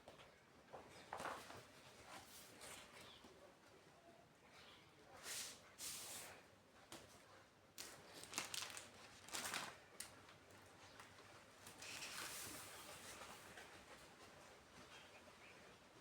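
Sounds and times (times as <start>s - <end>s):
packaging rustling and crinkling: 7.8s - 10.2s.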